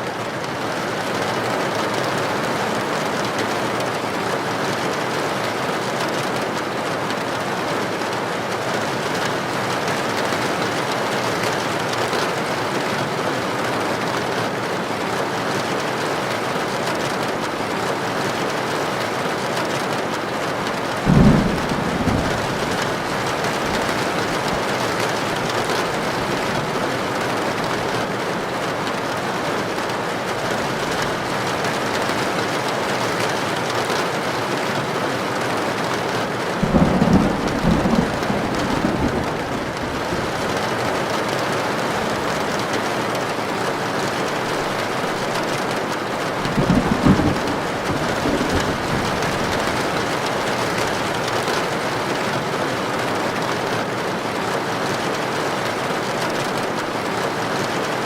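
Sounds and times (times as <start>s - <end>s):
heavy rain on a tin roof: 0.0s - 58.0s
low thunder boom: 21.1s - 24.7s.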